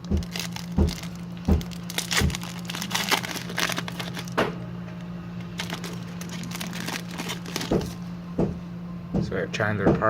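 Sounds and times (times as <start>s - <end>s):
plastic wrapper crinkling: 0.0s - 4.4s, 5.4s - 8.0s
sharp crackles of wrapper: 0.0s - 4.4s, 5.4s - 8.0s
steady low hum: 0.0s - 10.0s.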